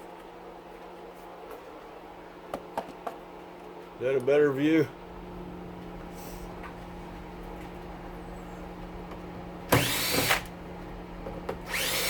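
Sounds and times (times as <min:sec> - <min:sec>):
stove fan hum: 0:00.0 - 0:12.0
electric drill spinning up: 0:09.7 - 0:10.5, 0:11.7 - 0:12.0.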